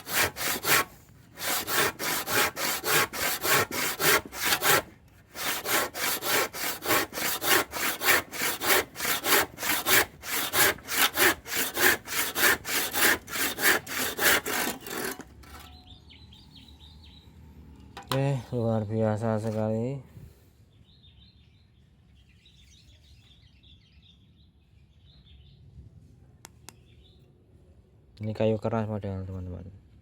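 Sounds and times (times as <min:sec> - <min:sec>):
hand saw cutting wood: 0:00.0 - 0:15.7.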